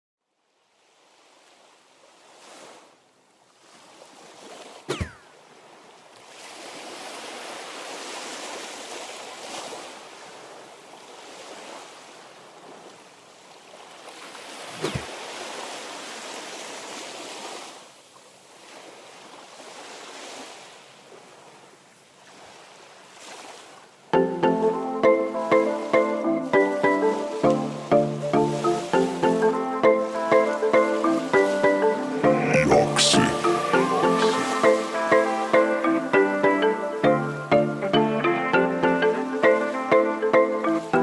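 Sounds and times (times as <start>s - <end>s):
sea waves washing in: 1.0s - 13.1s, 14.0s - 20.9s, 33.2s - 37.0s
music: 24.2s - 41.0s.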